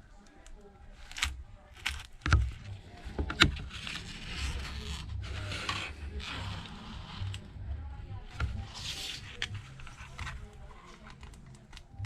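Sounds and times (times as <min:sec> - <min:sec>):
card scraping through adhesive: 0:01.0 - 0:07.5.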